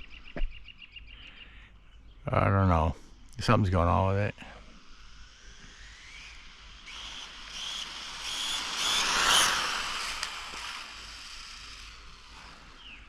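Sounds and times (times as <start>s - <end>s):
rc car motor whine passing: 3.1s - 13.0s.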